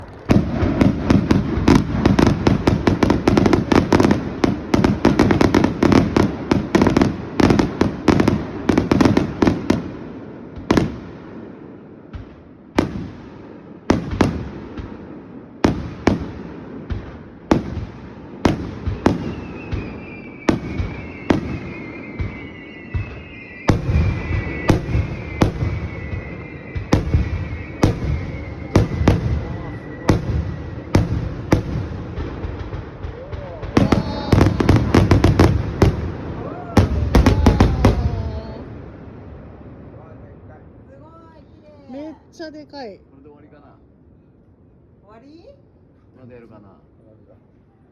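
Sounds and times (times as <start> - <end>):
fireworks bangs: 0.0 - 43.5
firework whistles sliding down: 19.1 - 31.1.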